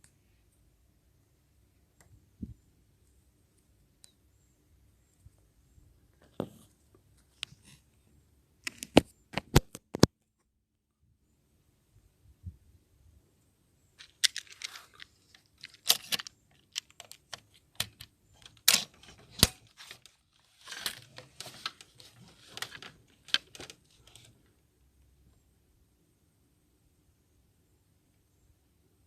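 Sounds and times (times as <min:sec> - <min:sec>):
rustling: 0:14.0 - 0:24.5.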